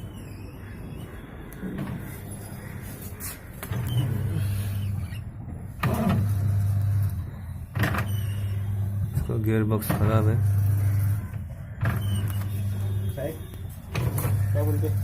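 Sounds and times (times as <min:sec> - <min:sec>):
washing machine motor hum: 0:03.6 - 0:15.0.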